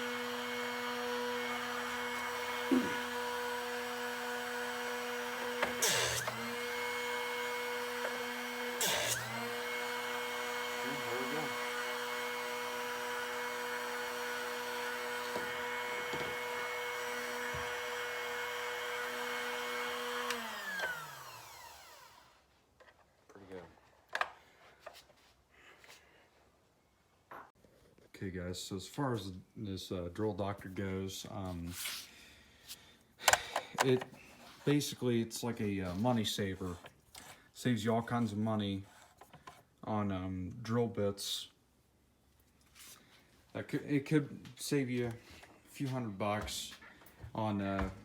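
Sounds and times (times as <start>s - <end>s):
drill bit grinding: 0.0s - 22.4s
electric motor whining: 0.0s - 22.4s.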